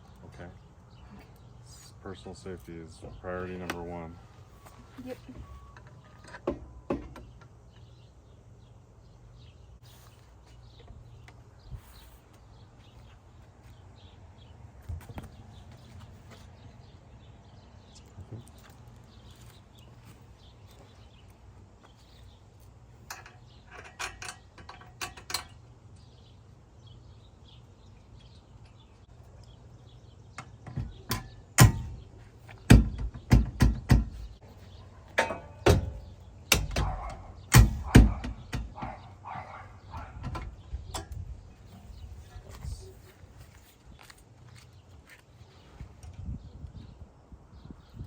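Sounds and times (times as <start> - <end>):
metal knocks and clanks: 30.4 - 32.1, 32.7 - 34.4, 35.1 - 39.0.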